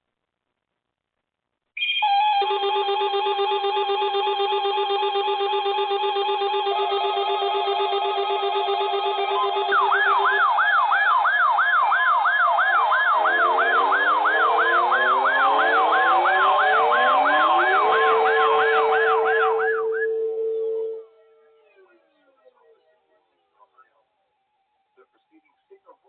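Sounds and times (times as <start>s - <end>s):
siren yelping: 1.8s - 22.1s
steady background tones: 1.9s - 21.5s
low tones gliding upward: 6.3s - 21.1s.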